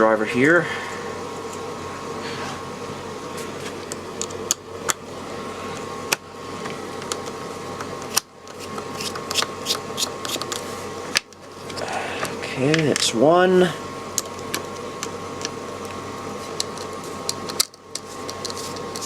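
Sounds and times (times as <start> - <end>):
steady hum: 0.0 - 19.0.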